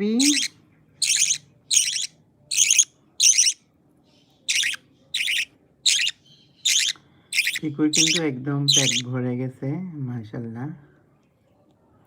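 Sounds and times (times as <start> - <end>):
budgerigar chirping: 0.2 - 3.6, 4.5 - 9.1.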